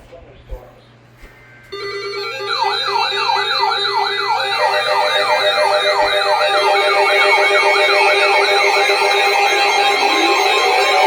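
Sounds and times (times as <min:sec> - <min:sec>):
pulsing siren alert tone: 0:01.7 - 0:11.0
fast siren pitch sweeps: 0:01.8 - 0:11.0.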